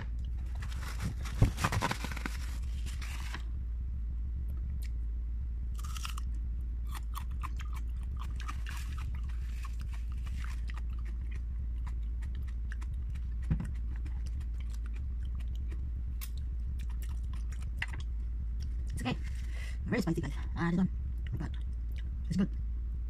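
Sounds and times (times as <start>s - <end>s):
steady low hum: 0.0s - 23.0s
chewing and crunching raw onion: 5.8s - 19.4s
low thump: 13.0s - 14.2s.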